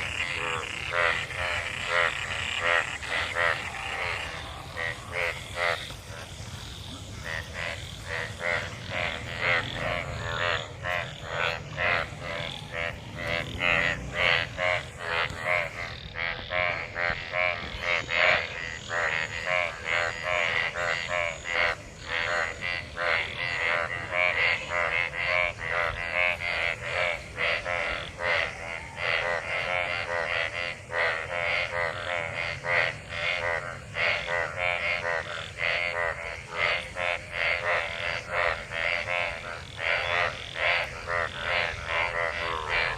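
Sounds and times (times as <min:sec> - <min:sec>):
frogs croaking in chorus: 0:00.0 - 0:42.9.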